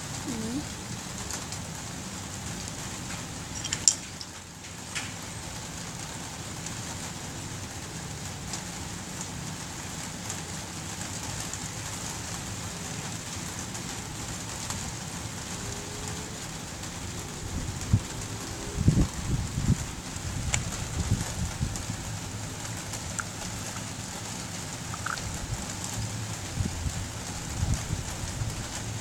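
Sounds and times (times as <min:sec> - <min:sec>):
steady rain-like hiss: 0:00.0 - 0:29.0
sharp clicks: 0:24.9 - 0:25.3.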